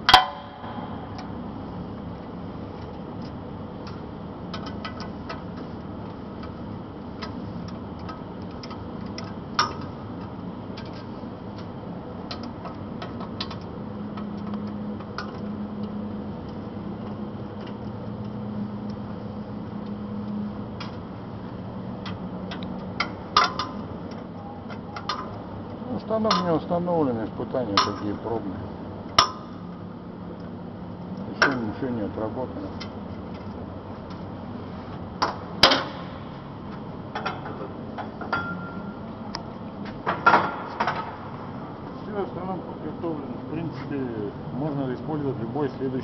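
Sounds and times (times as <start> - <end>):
low steady drone: 0.0 - 39.8
steady machine hum: 0.0 - 46.0
metal clank with ringing: 0.1 - 1.1, 38.3 - 39.0.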